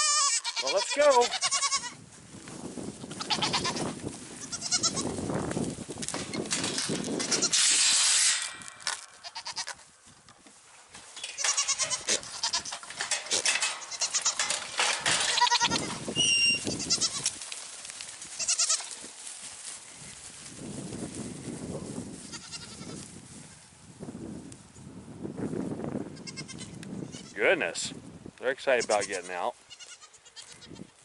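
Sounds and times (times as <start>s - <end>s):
goats bleating: 0.0s - 2.0s, 3.2s - 5.1s, 9.2s - 9.8s, 11.3s - 17.3s, 18.4s - 19.0s, 22.3s - 23.0s, 28.7s - 30.8s.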